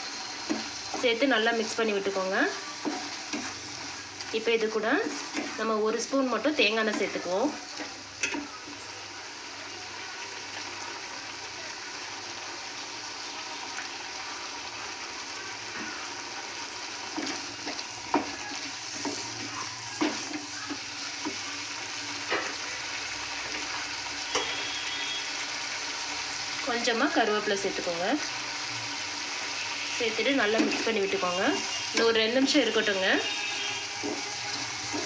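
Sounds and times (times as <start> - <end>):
curry sizzling in a pan: 0.0 - 35.0
spoon stirring and knocking pan: 0.2 - 8.8, 17.1 - 21.5, 30.4 - 35.0.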